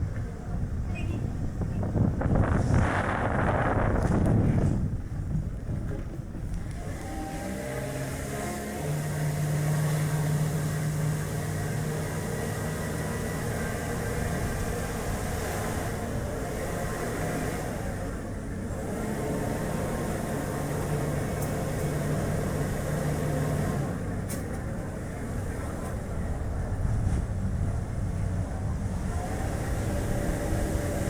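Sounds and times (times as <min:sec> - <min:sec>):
wind rushing: 0:01.5 - 0:05.1.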